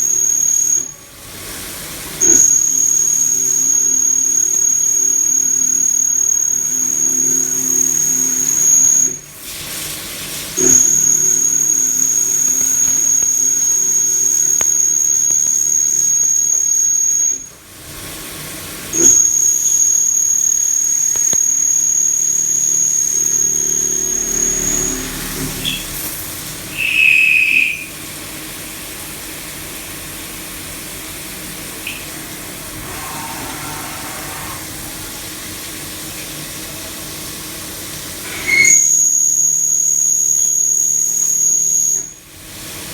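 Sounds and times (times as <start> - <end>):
high-pitched milling whine: 0.0 - 9.4, 10.5 - 18.0, 18.8 - 28.0, 29.2 - 42.5
low machine hum: 22.0 - 26.9, 31.4 - 37.2.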